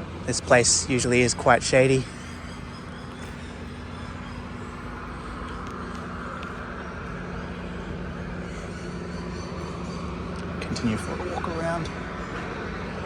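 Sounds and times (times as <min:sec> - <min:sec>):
traffic engine hum: 0:00.0 - 0:13.0
vehicle passing: 0:00.0 - 0:13.0.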